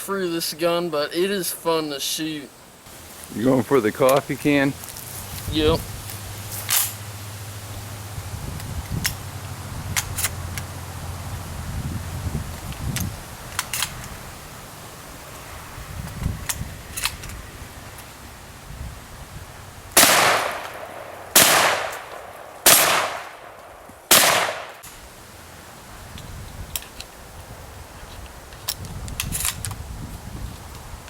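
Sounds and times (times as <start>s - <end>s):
shotgun shots echoing: 20.0s - 24.8s.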